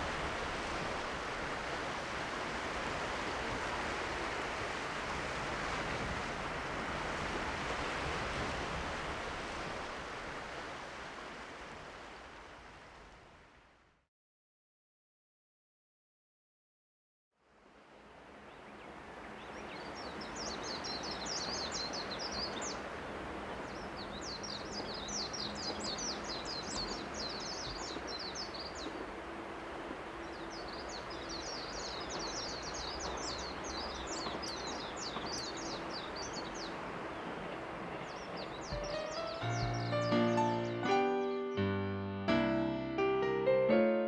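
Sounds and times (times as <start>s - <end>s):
songbird chirping: 18.3s - 42.7s.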